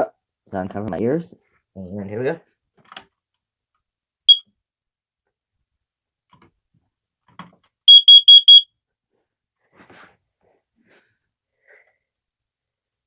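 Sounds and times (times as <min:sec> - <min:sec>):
alarm high-pitched beeps: 0:07.9 - 0:08.6.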